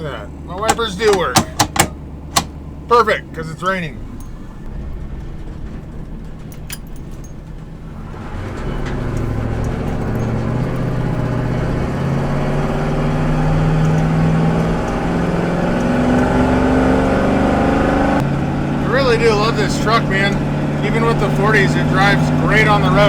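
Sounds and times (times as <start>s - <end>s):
truck engine accelerating: 0.0s - 23.0s
sharp clicks: 0.5s - 2.6s.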